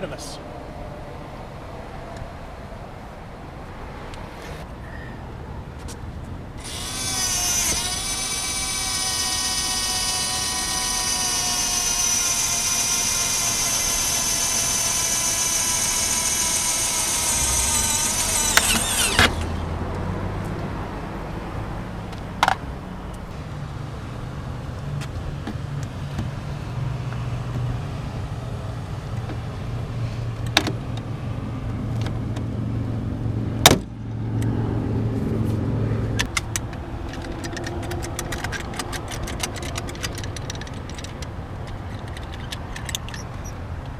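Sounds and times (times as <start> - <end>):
small electric motor whining: 6.6 - 19.7
sharp clicks: 10.5 - 20.0, 36.2 - 43.9.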